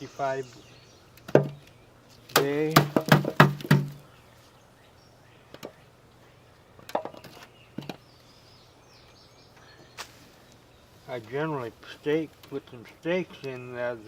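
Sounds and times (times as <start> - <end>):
man speaking: 11.1 - 14.0.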